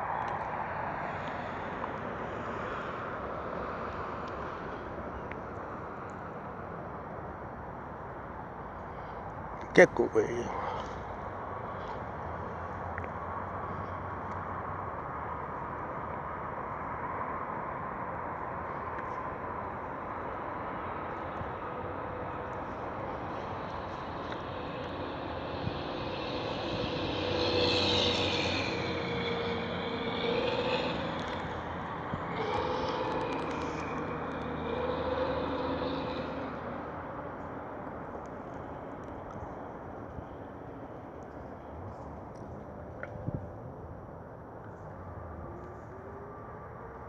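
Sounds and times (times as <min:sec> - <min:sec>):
constant rushing street noise: 0:00.0 - 0:47.0
vehicle passing: 0:19.1 - 0:40.9.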